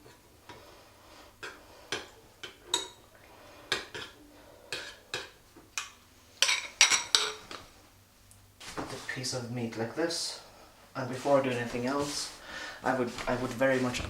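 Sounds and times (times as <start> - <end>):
spoon clinking against a bowl: 4.8 - 7.4.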